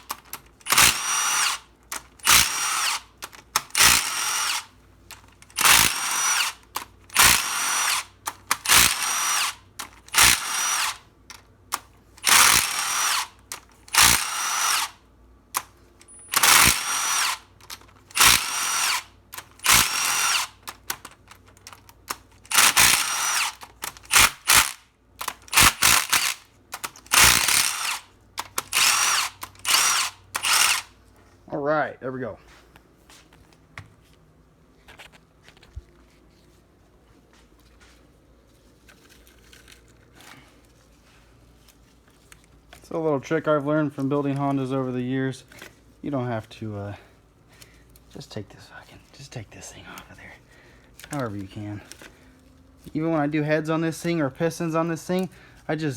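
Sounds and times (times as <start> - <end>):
power driver whining: 0.0 - 11.1, 11.7 - 15.0, 15.6 - 31.0.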